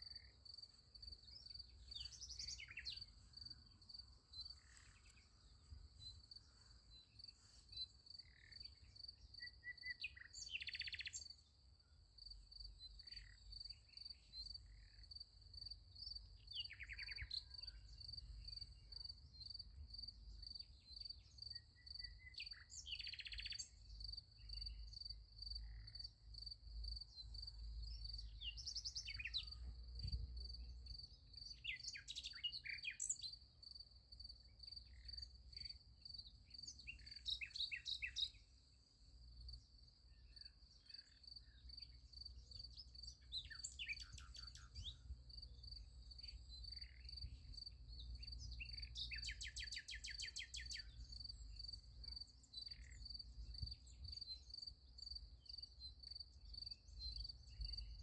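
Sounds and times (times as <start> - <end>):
crickets chirping: 0.0 - 11.4, 23.0 - 58.0
songbirds calling and trilling: 0.0 - 58.0.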